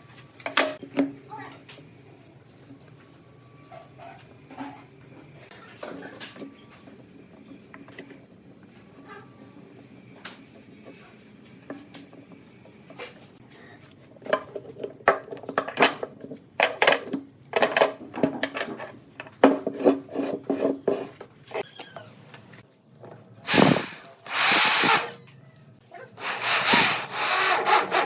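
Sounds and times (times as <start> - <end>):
knocks and scrapes on wood: 18.2 - 21.6
power tool working wood: 23.5 - 25.2, 26.2 - 28.0.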